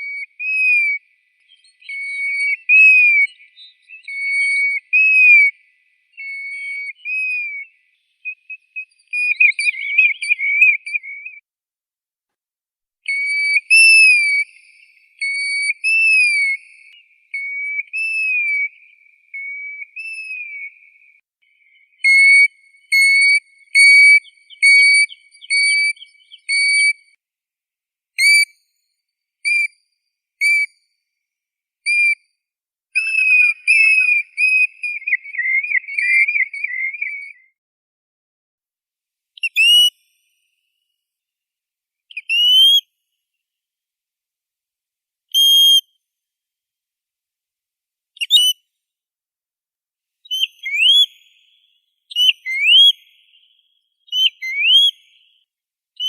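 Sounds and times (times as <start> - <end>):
plover whistling calls: 0.0 - 11.4, 13.1 - 27.0, 33.0 - 37.5, 50.3 - 55.4.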